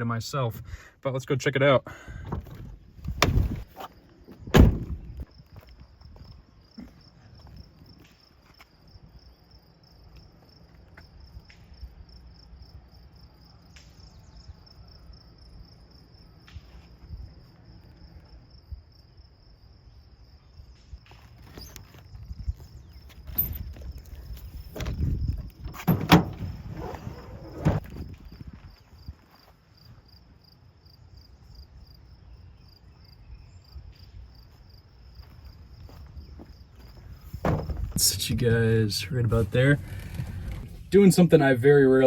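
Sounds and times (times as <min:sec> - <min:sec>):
loud knocks: 0:37.4 - 0:38.0.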